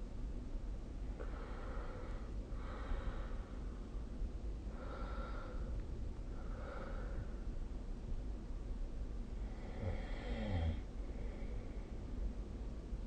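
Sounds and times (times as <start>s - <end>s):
person snoring: 9.5s - 10.8s.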